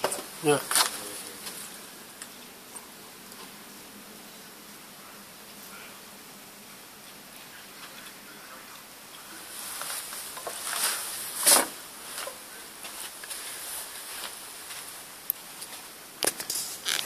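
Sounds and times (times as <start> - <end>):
scuffing and brushing in snow: 9.4 - 15.9.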